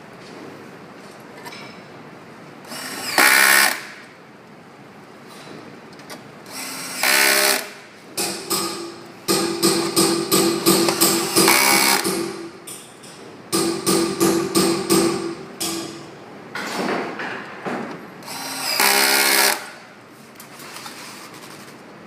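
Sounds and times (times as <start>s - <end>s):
electric screwdriver whirring: 2.7s - 3.8s, 6.5s - 7.6s, 18.2s - 19.6s.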